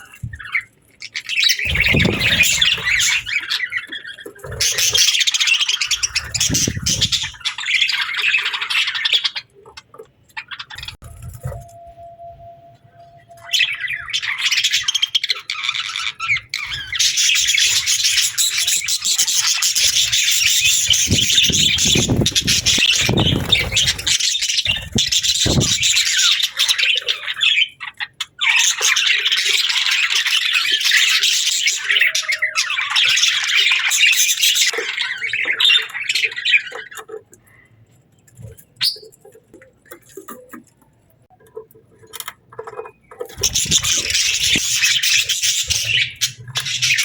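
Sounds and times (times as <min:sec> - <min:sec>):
budgerigars chattering: 0:13.5 - 0:37.2, 0:42.6 - 0:47.0.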